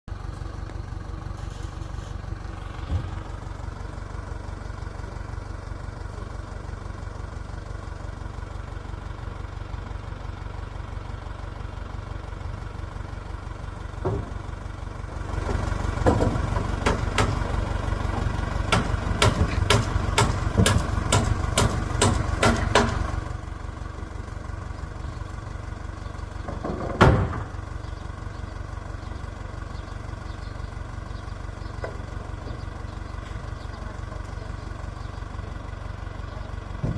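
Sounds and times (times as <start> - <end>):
engine idling: 0.1 - 36.9
sharp knocks: 16.0 - 17.4, 18.7 - 23.0.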